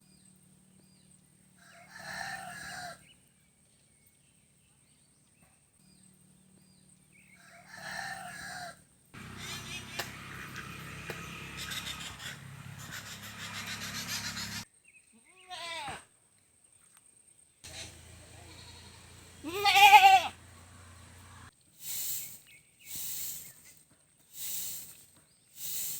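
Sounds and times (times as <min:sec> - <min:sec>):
rooster crowing: 0:01.6 - 0:03.0, 0:07.4 - 0:14.6.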